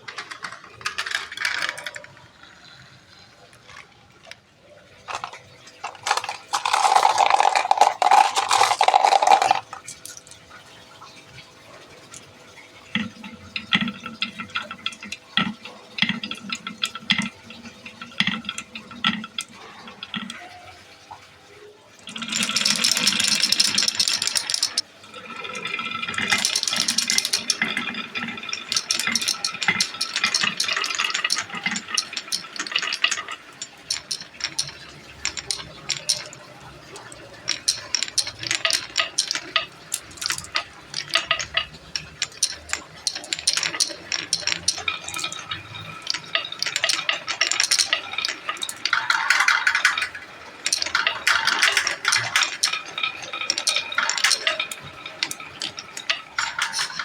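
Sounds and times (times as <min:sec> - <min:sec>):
marbles clacking: 0:00.0 - 0:10.4, 0:22.1 - 0:57.0
marbles rolling through tracks: 0:00.0 - 0:10.8, 0:12.9 - 0:20.7, 0:22.0 - 0:57.0.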